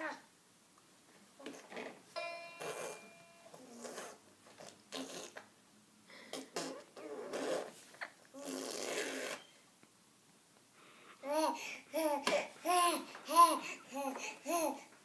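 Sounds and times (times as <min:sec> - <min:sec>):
baby blowing raspberries: 0:03.6 - 0:05.5, 0:06.1 - 0:09.5
baby babbling: 0:11.2 - 0:14.9.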